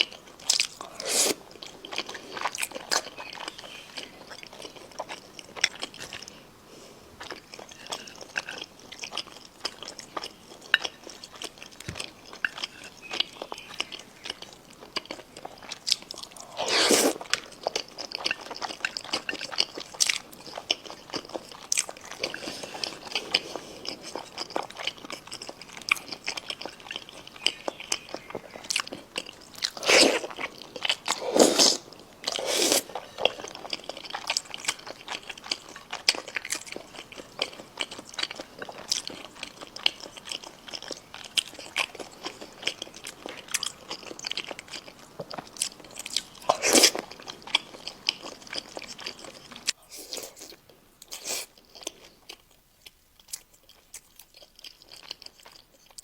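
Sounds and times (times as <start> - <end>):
loud crunchy bites: 0.6 - 1.4, 16.4 - 17.3, 29.6 - 32.9
chewing with wet crunchy clicks: 7.2 - 16.6, 17.2 - 31.2, 31.9 - 56.0.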